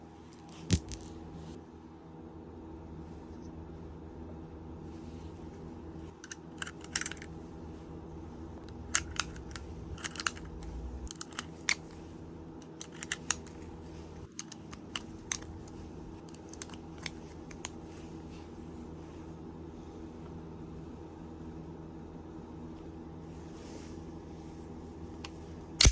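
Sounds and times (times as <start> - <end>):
steady low hum: 0.0 - 25.9
handgun mechanical clicks: 8.8 - 11.9, 12.7 - 13.6.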